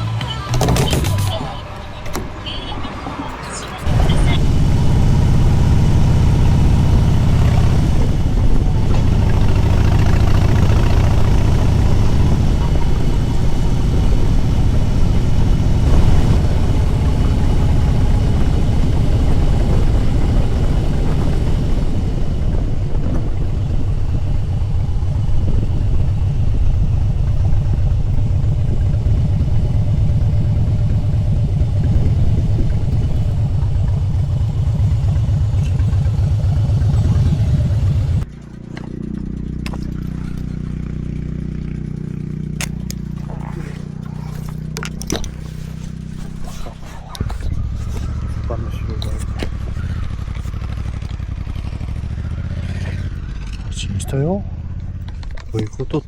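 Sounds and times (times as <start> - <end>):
motorcycle engine running: 0.0 - 56.0
wind rush: 11.1 - 35.0.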